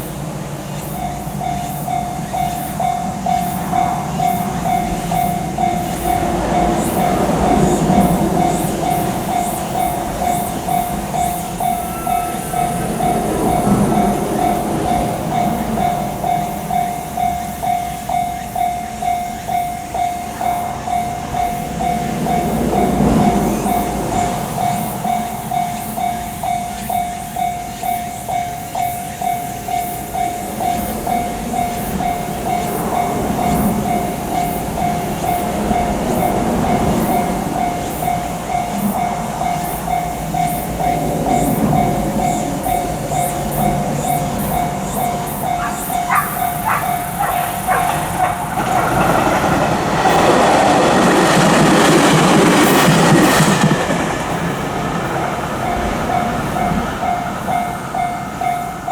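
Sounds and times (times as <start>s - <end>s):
level crossing warning bell: 0.0s - 58.9s
train rumbling past: 0.0s - 58.9s.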